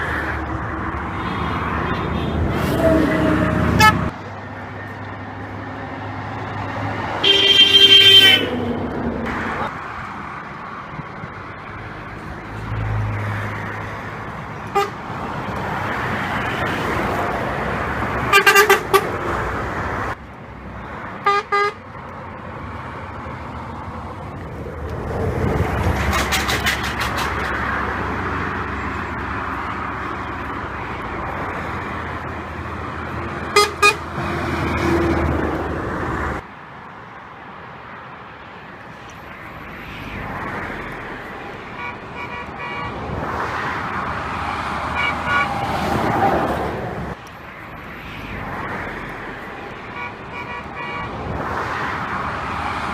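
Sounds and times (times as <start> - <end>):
passing traffic rumble and tyre noise: 0.0 - 52.9
truck horns tooting: 1.1 - 4.1, 7.2 - 8.9, 14.6 - 15.0, 18.2 - 19.2, 21.2 - 21.8, 33.4 - 35.1, 41.6 - 43.0, 44.8 - 46.3, 49.8 - 51.2.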